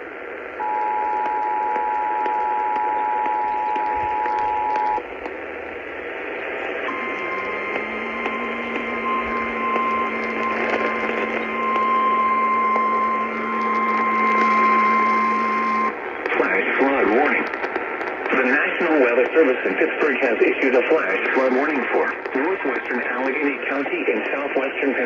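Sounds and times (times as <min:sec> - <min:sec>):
radio static with low hum: 0:00.0 - 0:25.0
two-tone alert signal: 0:06.9 - 0:15.9.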